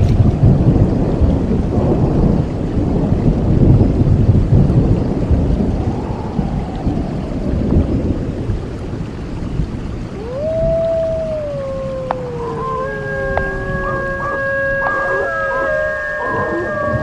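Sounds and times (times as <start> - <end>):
low rolling rumble: 0.0 - 17.0.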